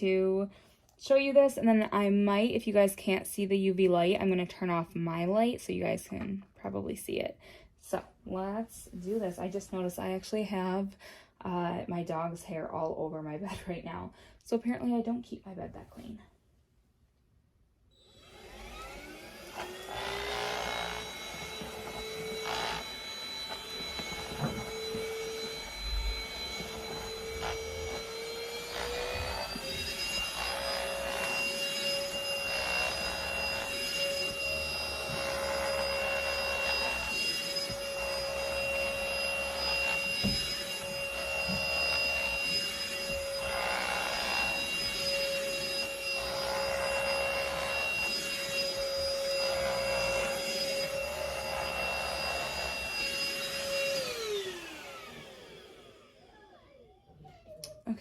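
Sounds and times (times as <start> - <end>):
vacuum motor whine: 18.0 - 57.9.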